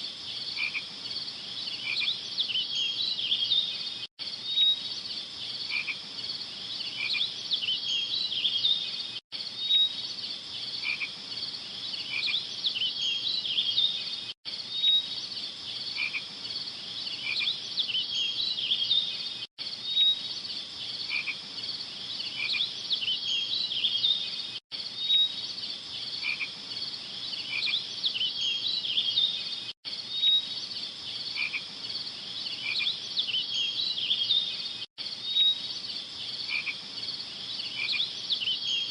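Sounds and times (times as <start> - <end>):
chorus of animal chirps and trills: 31.2 - 38.9.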